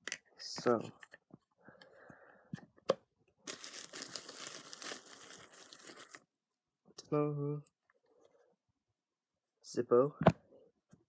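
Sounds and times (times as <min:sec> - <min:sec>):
packaging tearing and crinkling: 0:03.5 - 0:06.3.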